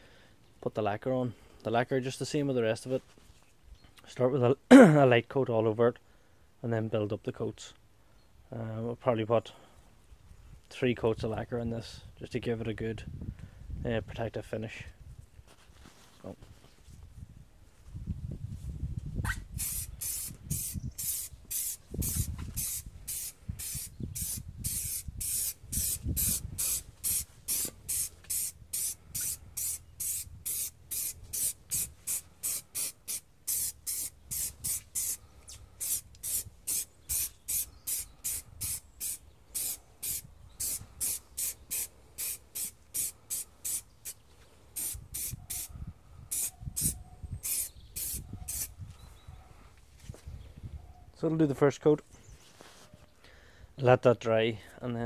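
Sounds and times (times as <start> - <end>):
aerosol can spraying bursts: 19.6 - 35.2, 35.8 - 44.2, 44.8 - 45.7, 46.3 - 48.7.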